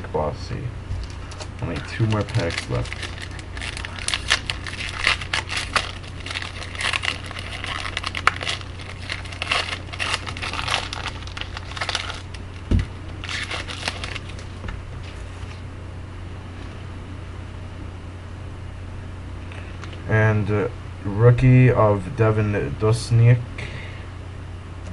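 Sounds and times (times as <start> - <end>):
steady low hum: 0.0 - 24.9
wrapper crinkling and tearing: 1.0 - 14.6.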